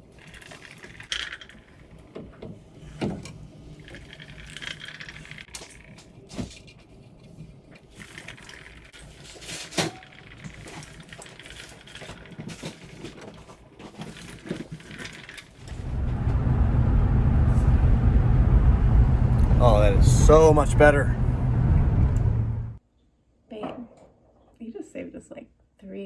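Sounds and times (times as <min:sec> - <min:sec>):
truck driving off rumble: 0:15.6 - 0:22.8.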